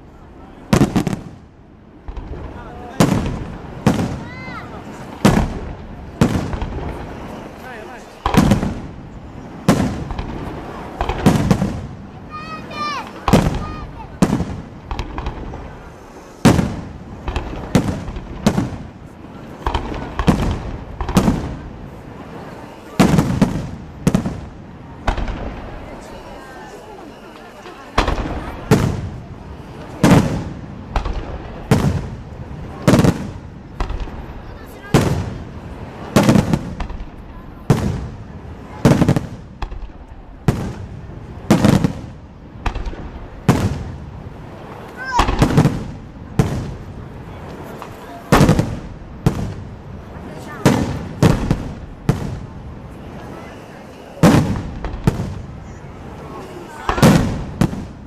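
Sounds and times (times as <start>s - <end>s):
fireworks bangs: 0.0s - 58.0s.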